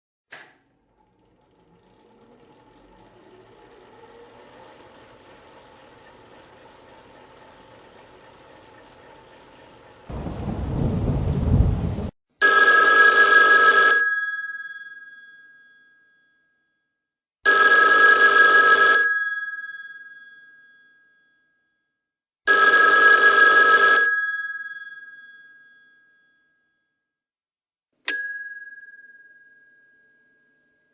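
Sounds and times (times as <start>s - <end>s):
low rumbling noise: 0.8s - 12.1s
telephone bell ringing: 12.4s - 16.6s, 17.4s - 21.6s, 22.5s - 26.8s, 28.1s - 30.9s.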